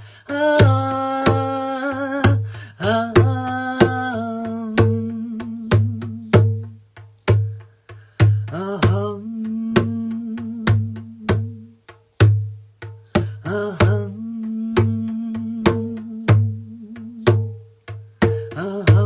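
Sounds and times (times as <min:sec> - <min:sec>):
woman chanting held tones: 0:00.2 - 0:06.4, 0:08.5 - 0:11.6, 0:13.5 - 0:17.3
drum beaten steadily: 0:00.3 - 0:07.6, 0:17.3 - 0:19.0.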